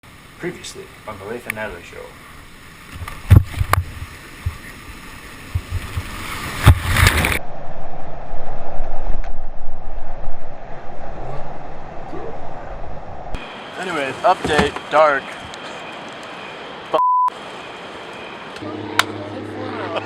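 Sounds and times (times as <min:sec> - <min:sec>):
rushing water: 0:02.8 - 0:07.4
wind noise: 0:02.9 - 0:13.4.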